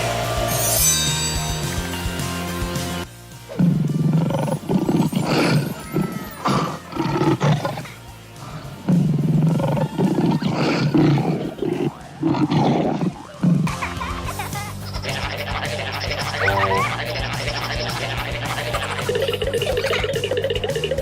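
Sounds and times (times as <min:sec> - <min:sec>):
background music: 0:00.0 - 0:21.0
big cat roars and grunts: 0:03.5 - 0:13.7.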